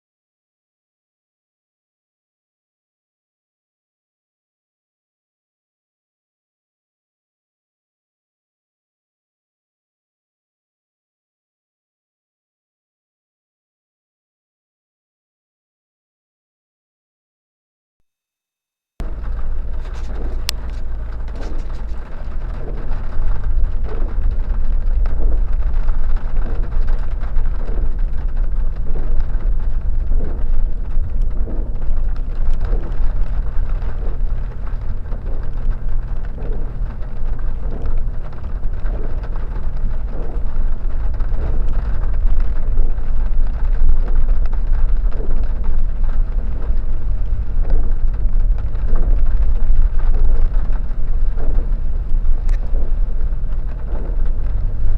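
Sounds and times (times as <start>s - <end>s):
vehicle engine and tyre noise: 19.0s - 54.9s
wind rumble on microphone: 19.0s - 54.9s.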